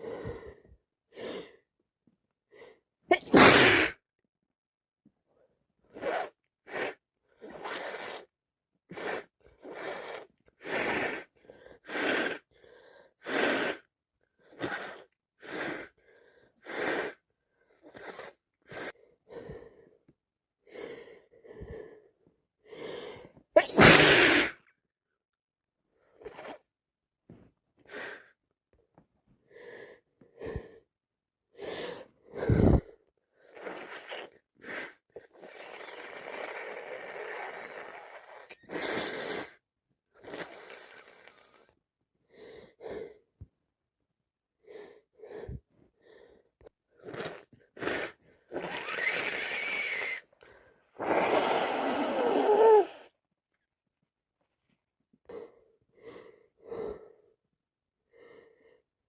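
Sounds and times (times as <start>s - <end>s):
woman sneezing: 3.1s - 4.0s, 23.6s - 24.6s
woman sniffing: 47.0s - 50.3s, 51.0s - 53.2s.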